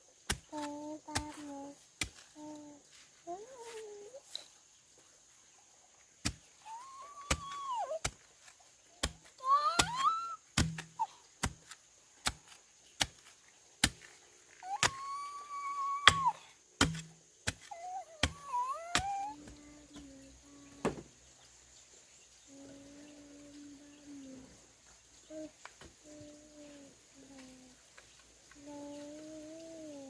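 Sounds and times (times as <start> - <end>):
hand tool chopping strikes: 9.0 - 12.4, 16.1 - 20.1.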